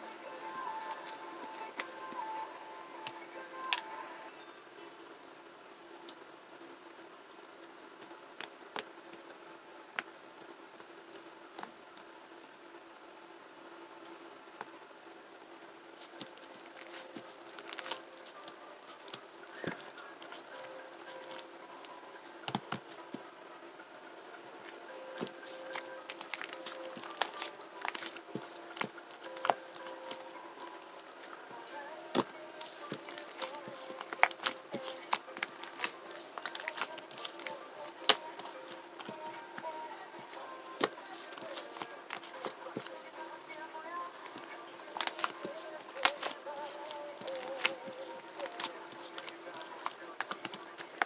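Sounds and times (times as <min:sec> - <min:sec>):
faint steady hum: 0:00.0 - 0:51.0
slime squished by hand: 0:32.1 - 0:43.1, 0:44.2 - 0:51.0.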